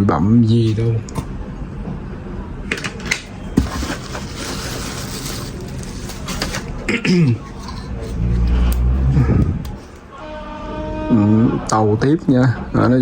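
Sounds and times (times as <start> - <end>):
packaging rustling: 3.6 - 6.9.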